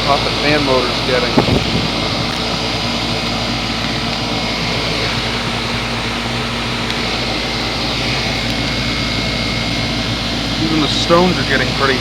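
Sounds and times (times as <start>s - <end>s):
compressor humming: 0.0s - 12.0s
condenser fan whirring: 0.0s - 12.0s.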